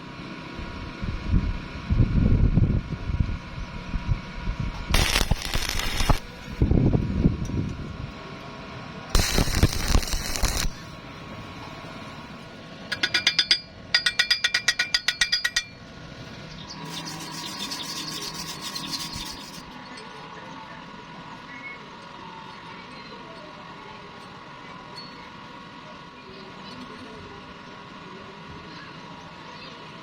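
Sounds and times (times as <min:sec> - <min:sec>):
harsh tool noise burst: 0:04.9 - 0:06.6, 0:09.2 - 0:11.0, 0:16.8 - 0:19.7
rapid clicks: 0:05.0 - 0:06.3, 0:09.2 - 0:10.9
steady hiss: 0:05.0 - 0:06.6, 0:09.2 - 0:11.1.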